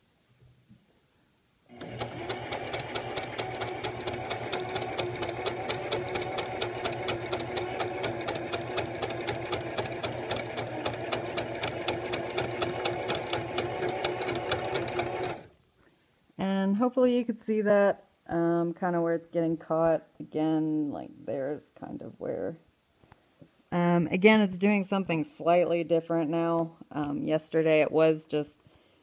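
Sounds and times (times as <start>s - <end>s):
sewing machine stitching: 1.7s - 15.5s.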